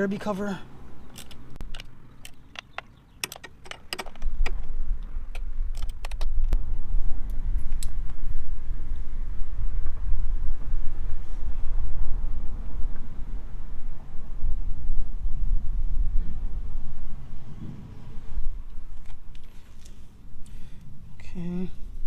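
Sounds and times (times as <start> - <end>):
steady low rumble: 4.2 - 22.0.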